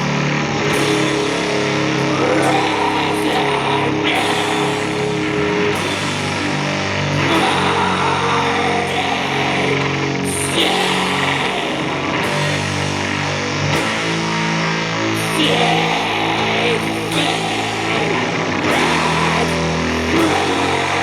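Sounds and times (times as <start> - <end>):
cymbal crash: 0.0 - 15.2
distorted guitars and bass chords: 0.0 - 21.0.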